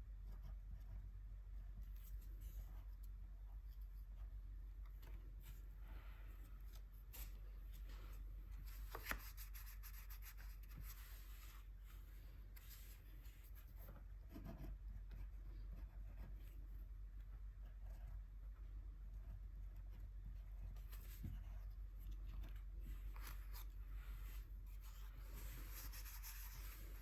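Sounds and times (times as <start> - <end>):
low steady hum: 0.0 - 27.0
paint strokes on paper: 9.1 - 14.5, 22.9 - 27.0.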